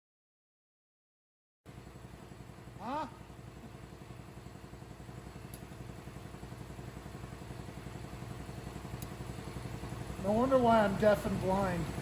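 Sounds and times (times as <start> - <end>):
motor low pulsing: 1.7 - 12.0.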